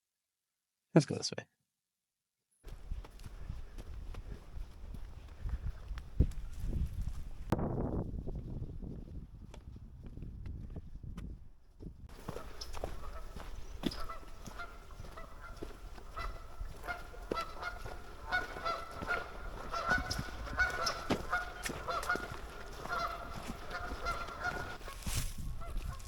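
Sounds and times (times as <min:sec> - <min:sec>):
honking animal calls: 0:12.2 - 0:24.9.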